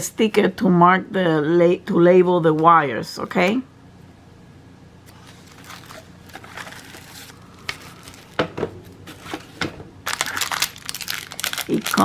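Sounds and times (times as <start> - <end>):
plastic packaging rustling: 5.1 - 12.0.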